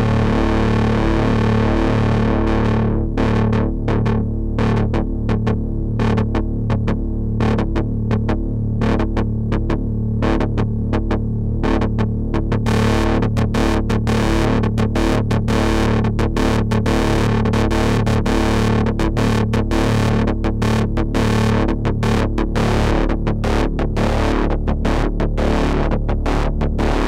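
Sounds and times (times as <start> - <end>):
low synth drone: 0.0 - 13.6.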